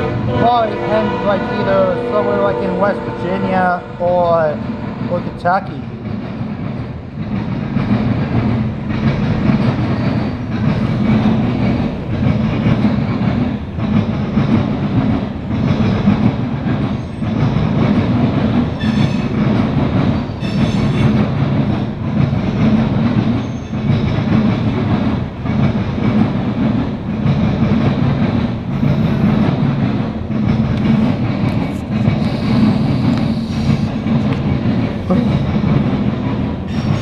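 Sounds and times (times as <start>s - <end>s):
freight train rumbling past: 0.0s - 37.0s
train wheel squeals: 9.9s - 10.7s, 16.8s - 17.8s, 18.7s - 19.4s, 20.0s - 21.2s, 23.3s - 24.3s, 32.2s - 34.0s, 36.7s - 37.0s.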